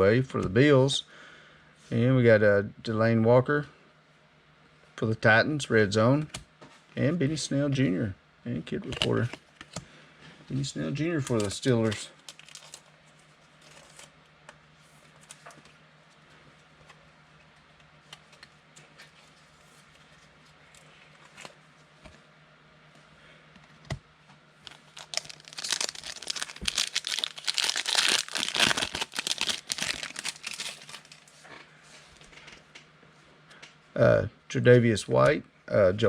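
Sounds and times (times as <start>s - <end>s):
foil wrapper crinkling: 11.3s - 12.9s, 24.6s - 31.3s.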